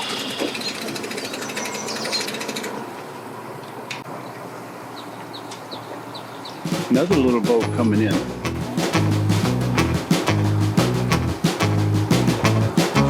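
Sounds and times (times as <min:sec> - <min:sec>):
faint bird chirps: 0:00.0 - 0:02.8
small engine rattling: 0:00.0 - 0:03.0.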